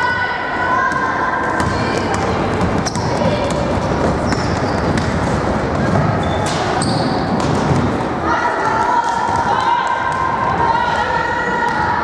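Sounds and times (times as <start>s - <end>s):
basketball dribbling: 1.6s - 8.0s.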